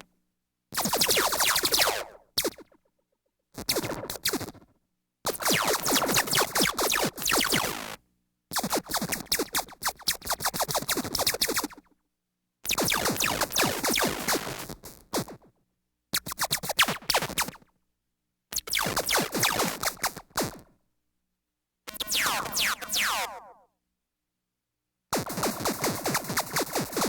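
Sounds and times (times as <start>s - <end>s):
electronic laser gun zaps: 21.9s - 23.6s.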